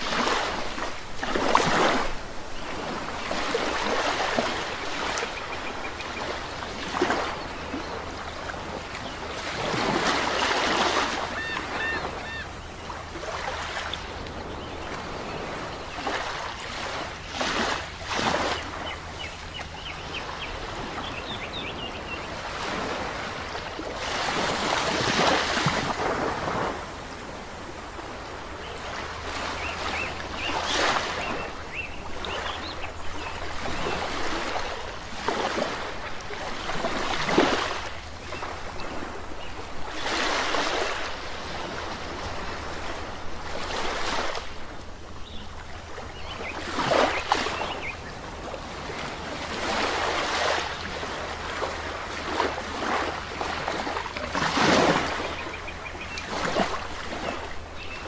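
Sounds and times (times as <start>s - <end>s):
sea waves washing ashore: 0.0s - 58.0s
birds calling: 2.5s - 23.8s, 27.2s - 35.0s, 45.2s - 52.0s, 53.1s - 58.0s.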